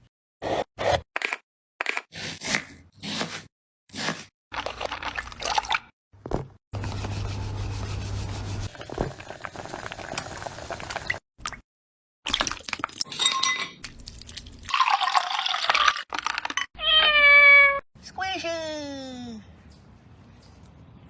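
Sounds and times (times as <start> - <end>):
cat meowing: 16.8 - 17.8.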